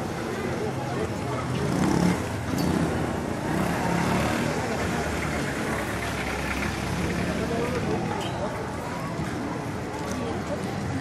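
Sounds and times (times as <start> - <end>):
traffic passing: 0.0 - 11.0.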